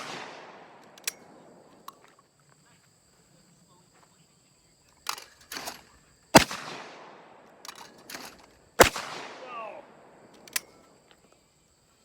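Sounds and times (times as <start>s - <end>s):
shotgun shot with echo: 0.0s - 0.9s, 6.4s - 7.4s, 8.8s - 9.9s
quieter bangs: 6.4s - 10.6s.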